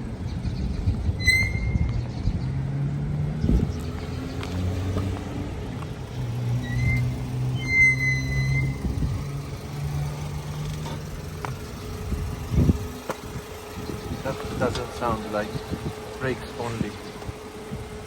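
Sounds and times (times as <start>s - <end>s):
low wheel drone: 0.0s - 18.0s
high-pitched squeal: 1.2s - 2.2s, 6.6s - 9.4s.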